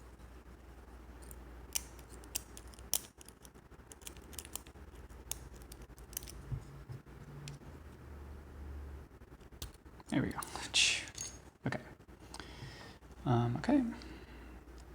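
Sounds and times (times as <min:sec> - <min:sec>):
lock pick metallic clicks: 0:01.2 - 0:06.5.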